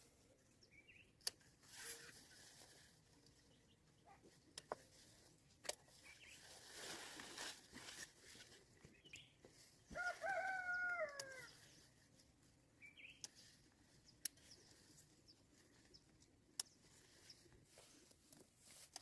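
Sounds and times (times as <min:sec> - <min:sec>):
rooster crowing: 0:09.9 - 0:11.5.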